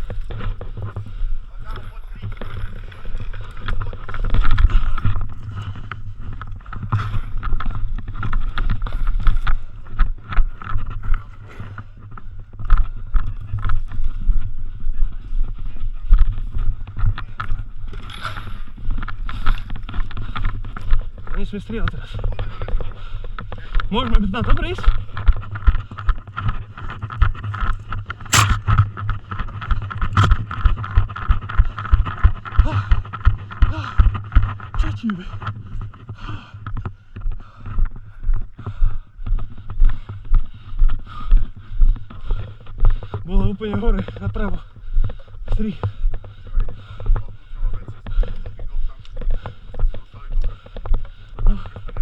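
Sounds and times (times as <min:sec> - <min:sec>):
footsteps and gear knocking: 0:00.0 - 0:52.0
camera handling noise: 0:28.3 - 0:28.8, 0:30.1 - 0:30.4.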